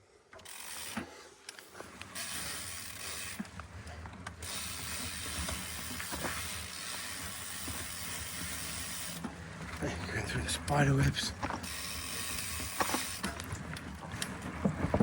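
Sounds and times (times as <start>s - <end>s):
sharp ticks from bike: 0.3s - 9.7s, 11.4s - 14.6s
tyre and wind noise: 11.3s - 15.0s.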